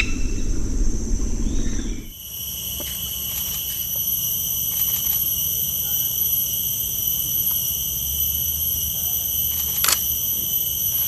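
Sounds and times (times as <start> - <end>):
low rumbling: 0.0 - 2.2
insects trilling: 0.0 - 11.0.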